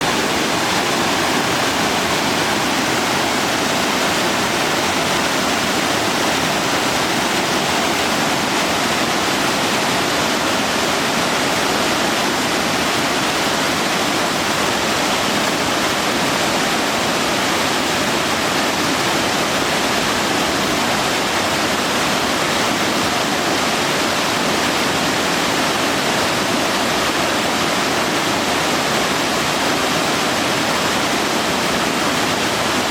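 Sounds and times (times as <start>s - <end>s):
river water rushing over rocks: 0.0s - 32.9s.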